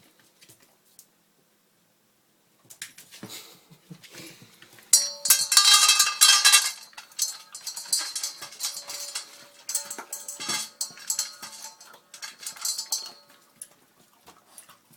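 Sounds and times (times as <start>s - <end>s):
bowl clattering and ringing: 4.9s - 13.8s
dog eating from a bowl: 5.0s - 14.9s.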